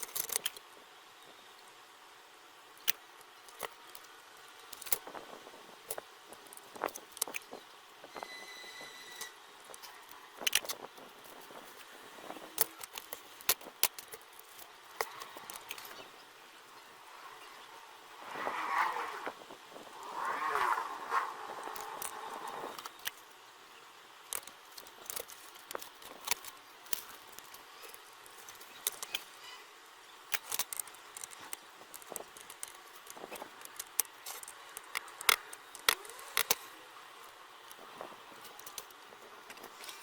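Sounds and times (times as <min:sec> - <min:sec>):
steady noise: 0:09.2 - 0:39.4.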